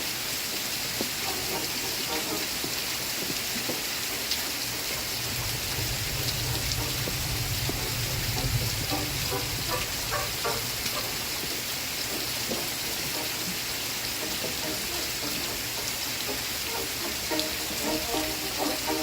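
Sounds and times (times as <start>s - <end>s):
steady rain falling: 0.0s - 19.0s.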